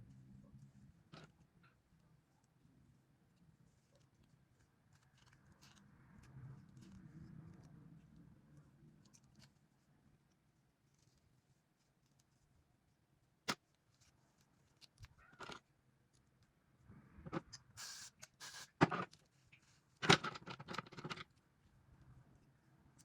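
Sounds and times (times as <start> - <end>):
rustling and scraping handling noises: 0.0 - 23.0.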